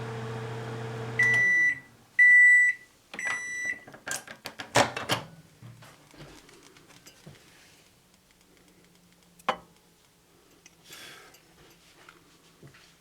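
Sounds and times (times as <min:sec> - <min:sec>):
microwave oven humming: 0:00.0 - 0:02.0.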